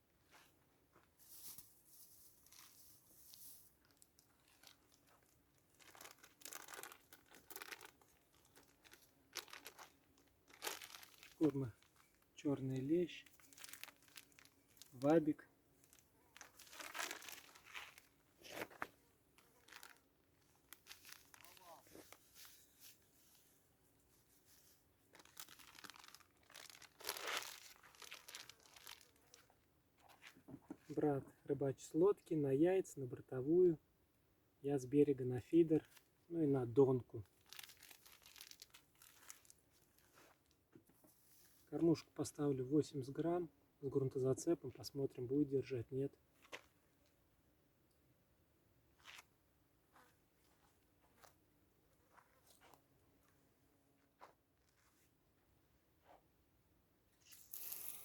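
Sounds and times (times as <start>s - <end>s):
plastic packet rustling: 1.3s - 12.4s, 13.2s - 23.4s, 25.1s - 30.3s, 37.3s - 40.6s, 57.2s - 58.0s.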